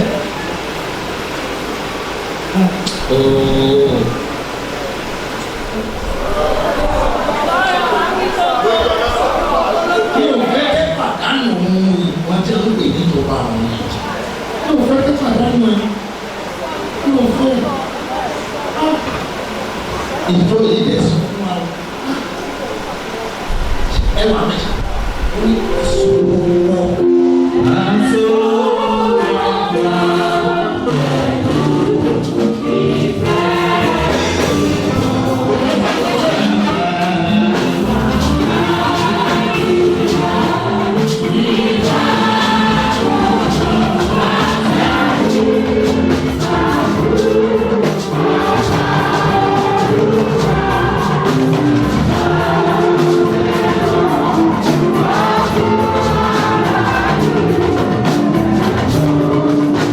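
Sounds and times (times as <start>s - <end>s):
choir singing gospel: 0.0s - 59.9s
instrumental accompaniment with beat: 25.6s - 59.9s.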